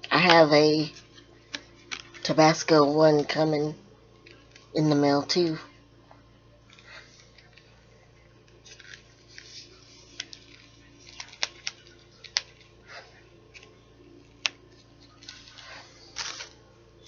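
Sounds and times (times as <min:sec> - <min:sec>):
packaging rustling and crinkling: 0:08.5 - 0:12.9, 0:13.5 - 0:16.7.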